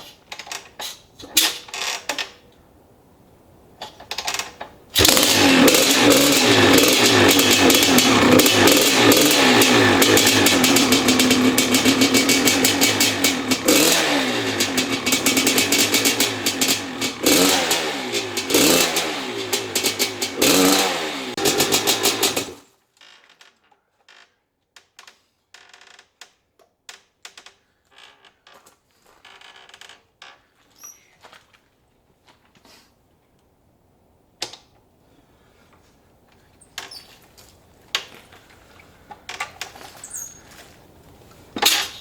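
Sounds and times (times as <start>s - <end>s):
dirt bike engine revving: 5.0s - 22.6s.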